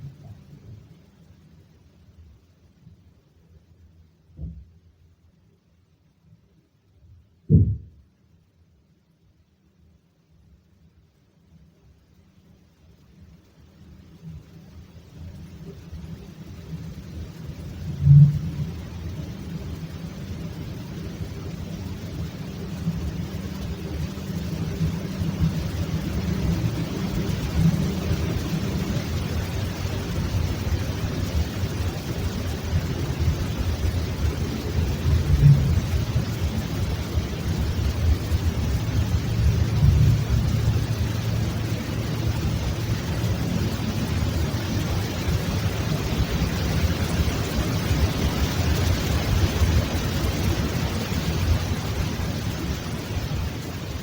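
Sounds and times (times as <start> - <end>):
steady hiss: 0.0 - 54.0
loud low rumble: 7.5 - 7.9, 17.6 - 19.2, 24.7 - 46.6.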